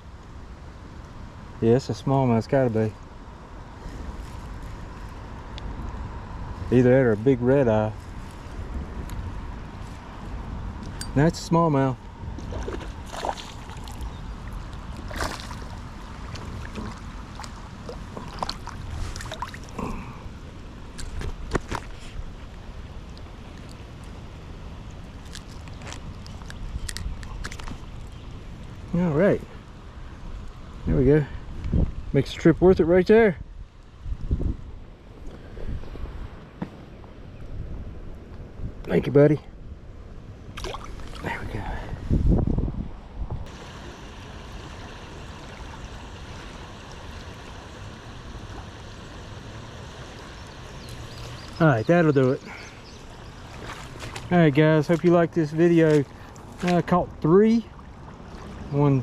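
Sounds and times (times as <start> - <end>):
wind buffeting microphone: 3.3 - 59.0
water rushing: 10.9 - 29.7, 40.5 - 41.8, 43.5 - 59.0.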